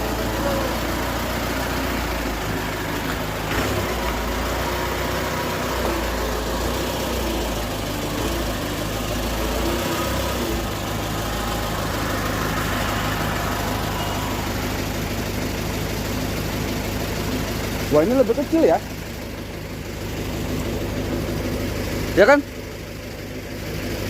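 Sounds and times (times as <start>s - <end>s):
diesel bus engine running: 0.0s - 24.0s.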